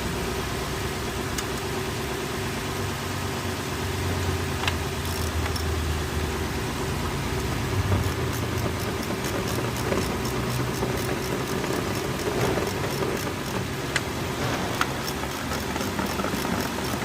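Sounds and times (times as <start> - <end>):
car engine idling with light ticking: 0.0 - 17.0
sharp clicks: 4.6 - 5.8, 7.9 - 17.0.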